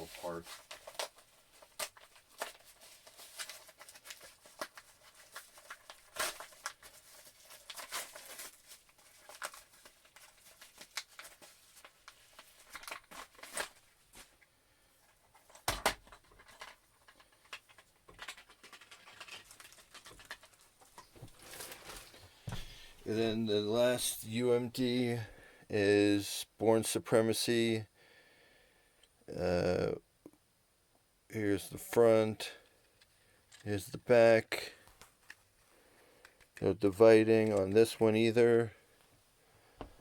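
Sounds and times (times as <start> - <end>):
package crinkling and tapping: 15.5 - 22.7.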